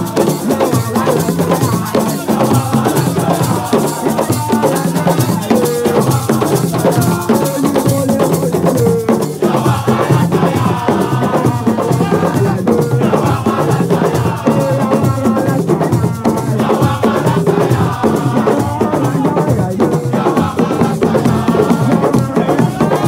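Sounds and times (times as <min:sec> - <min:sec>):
drums and shakers rhythm: 0:00.0 - 0:23.0.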